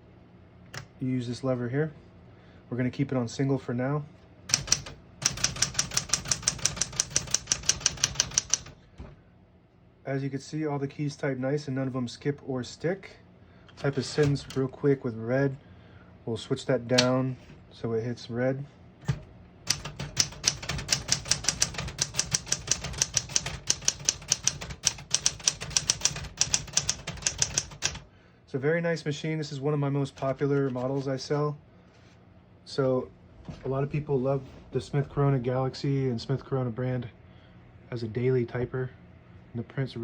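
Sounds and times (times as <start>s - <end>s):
manual typewriter keystrokes: 4.5s - 8.8s, 13.8s - 14.6s, 19.1s - 28.1s.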